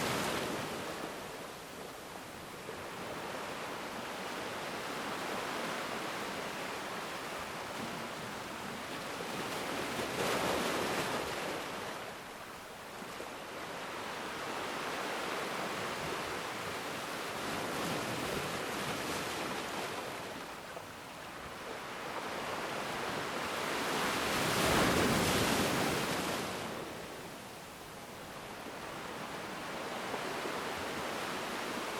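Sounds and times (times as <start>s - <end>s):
ocean waves breaking on shore: 0.0s - 31.9s.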